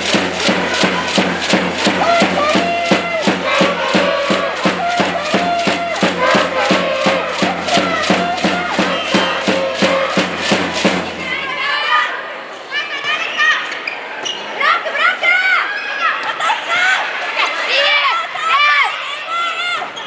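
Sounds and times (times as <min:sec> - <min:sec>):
fast percussion beat: 0:00.0 - 0:11.6
crowd chanting in unison: 0:00.0 - 0:11.8.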